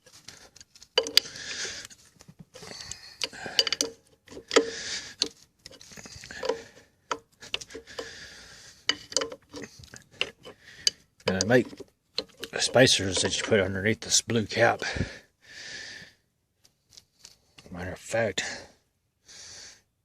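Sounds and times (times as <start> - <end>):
rubbing and rustling: 0.0 - 15.0
metal tools clinking: 0.8 - 1.9, 2.6 - 8.2, 8.9 - 15.1.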